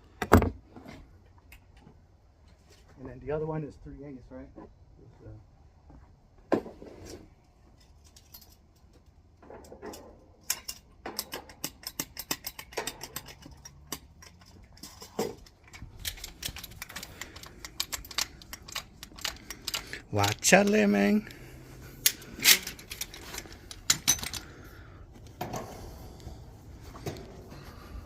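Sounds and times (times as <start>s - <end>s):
metal hand tools clinking: 10.5s - 21.4s, 22.0s - 24.7s.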